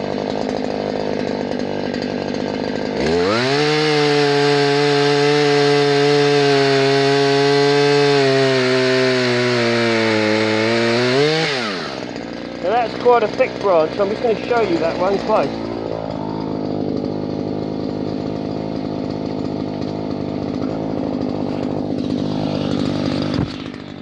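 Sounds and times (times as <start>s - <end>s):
chain sawing into branch: 0.0s - 24.0s
two-stroke engine revving: 0.0s - 24.0s.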